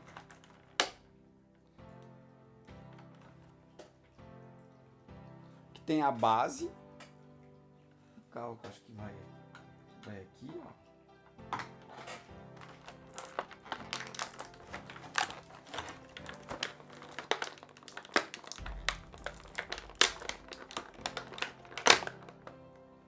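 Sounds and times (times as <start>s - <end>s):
plastic packaging crinkling: 0.0s - 1.2s, 11.2s - 23.0s
sharp clicks of toy parts: 11.6s - 22.6s.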